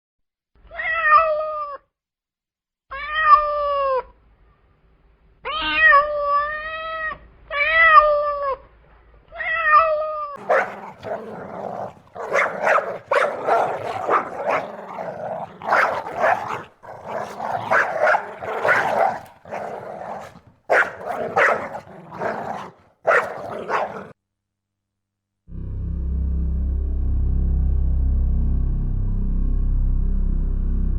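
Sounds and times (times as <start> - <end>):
rough noisy animal sounds: 10.4 - 24.1.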